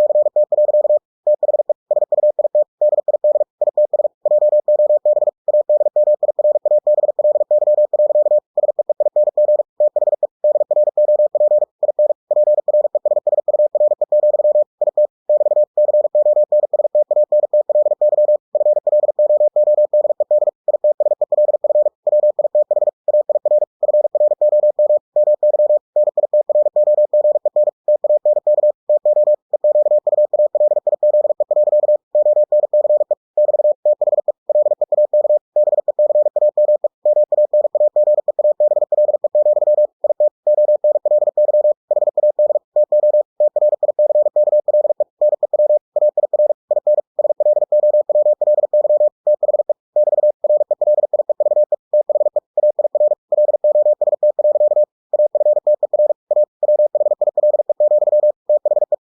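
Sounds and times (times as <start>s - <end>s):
morse code beeps: 0.0s - 58.9s.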